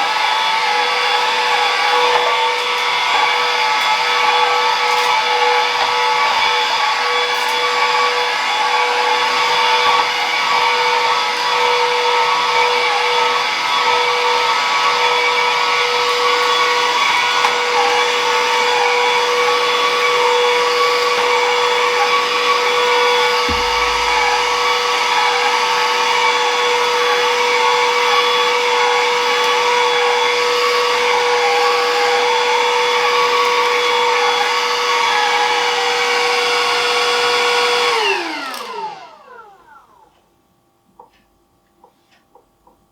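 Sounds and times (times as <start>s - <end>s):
stick vacuum cleaner whining: 0.0s - 40.0s
low bump: 23.4s - 25.3s.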